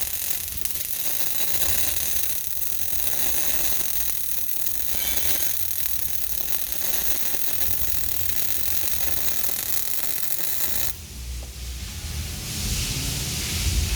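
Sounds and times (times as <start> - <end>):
welding arc crackling: 0.0 - 11.0.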